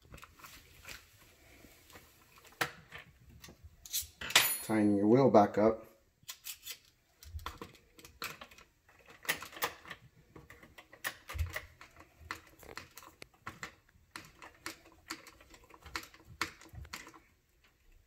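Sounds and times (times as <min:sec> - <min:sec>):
wrench and plastic parts clicking: 0:06.2 - 0:17.8.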